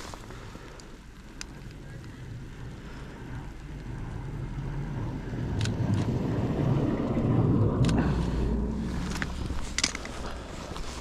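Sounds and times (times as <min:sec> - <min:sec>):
road vehicle passing: 0:01.8 - 0:11.0
sharp clicks: 0:05.5 - 0:06.2.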